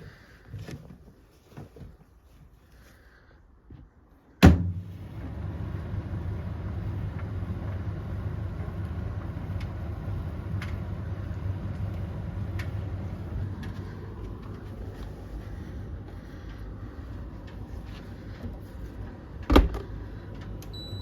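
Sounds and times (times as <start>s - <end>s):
tumble dryer clunk: 4.4s - 14.3s
dryer drum rumbling: 4.4s - 21.0s.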